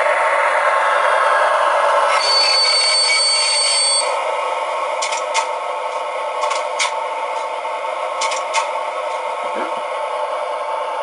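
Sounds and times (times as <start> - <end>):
diesel engine through small loudspeaker: 0.0 - 11.0
thin high whistling tone: 2.1 - 4.2.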